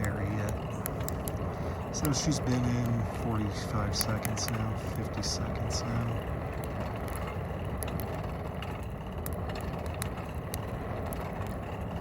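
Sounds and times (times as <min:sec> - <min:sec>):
fire crackling and popping: 0:00.0 - 0:12.0
low fire rumble: 0:00.0 - 0:12.0.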